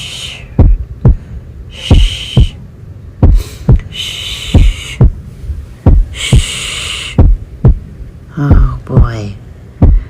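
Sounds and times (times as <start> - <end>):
heartbeat thumps: 0.0 - 2.6, 3.2 - 5.2, 5.8 - 10.0
person shushing: 1.7 - 2.6, 3.4 - 5.0.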